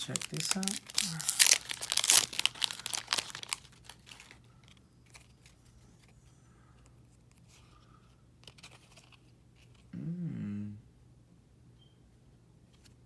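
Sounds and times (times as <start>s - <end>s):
wrapper crinkling: 0.0s - 4.4s.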